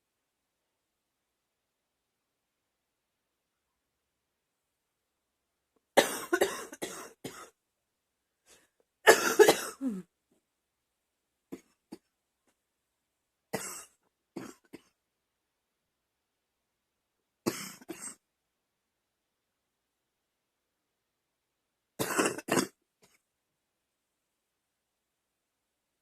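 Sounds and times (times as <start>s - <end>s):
girl coughing: 6.0s - 7.5s, 9.1s - 10.1s, 22.0s - 22.8s.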